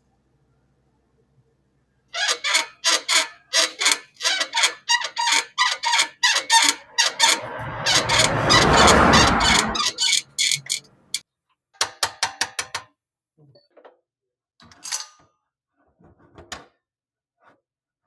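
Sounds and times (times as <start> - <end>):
shock absorber squeaking: 2.2 - 11.2
rushing noise: 6.6 - 10.1.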